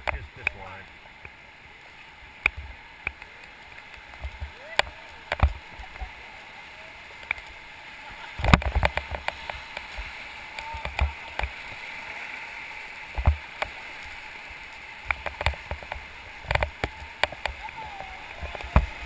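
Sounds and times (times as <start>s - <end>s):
river water rushing: 0.0s - 19.0s
knocks and thumps on raft: 15.2s - 19.0s.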